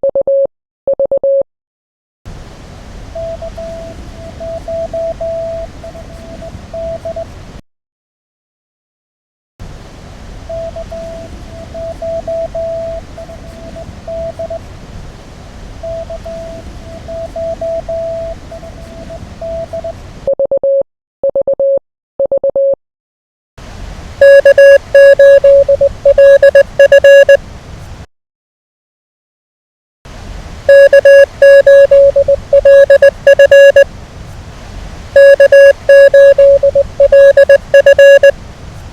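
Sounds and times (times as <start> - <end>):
radio band hiss: 12.7 - 14.8, 18.3 - 19.3
clean lower keyed tone: 24.2 - 27.4, 30.7 - 33.9, 35.2 - 38.3
loud keyed tone: 24.2 - 27.4, 30.7 - 33.9, 35.2 - 38.4
morse code tone: 24.2 - 27.4, 30.7 - 33.9, 35.2 - 38.4.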